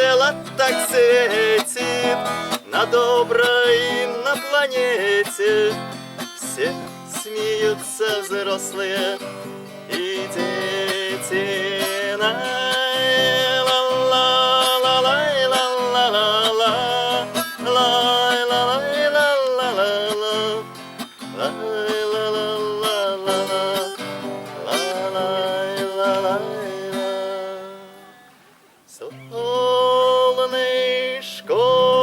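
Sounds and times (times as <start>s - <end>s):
acoustic guitar: 0.0s - 32.0s.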